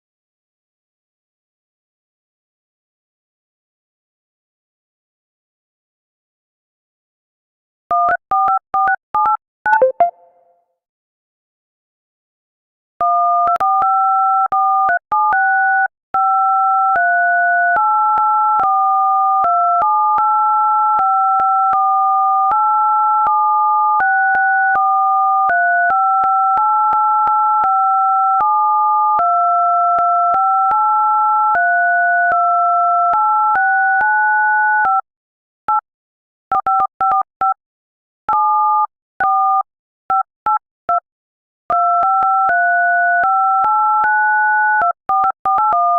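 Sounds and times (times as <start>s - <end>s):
keypad dial tones playing a tune: 7.9s - 10.3s, 36.5s - 37.6s, 38.3s - 41.0s, 41.7s - 45.9s
short quick beeps: 9.7s - 10.5s.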